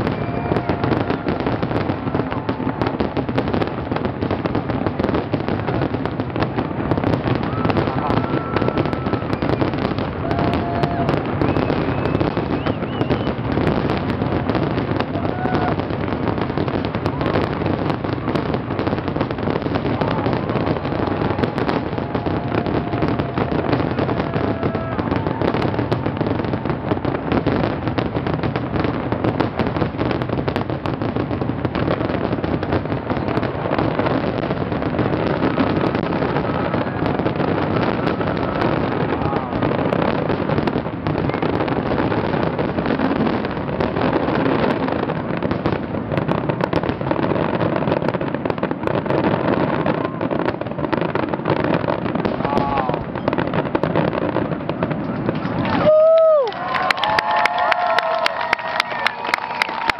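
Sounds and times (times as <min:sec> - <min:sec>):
fireworks bangs and crackling: 0:00.0 - 0:59.9
fireworks whistling: 0:00.0 - 0:59.9.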